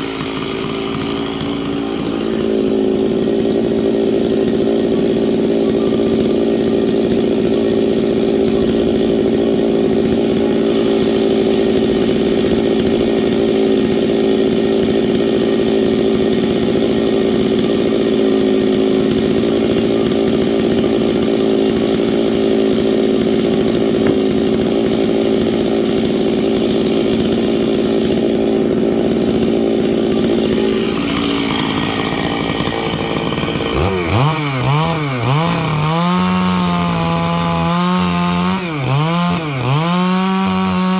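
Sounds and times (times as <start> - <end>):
chainsaw cutting wood: 0.0 - 40.9
chainsaw revving: 0.0 - 40.9.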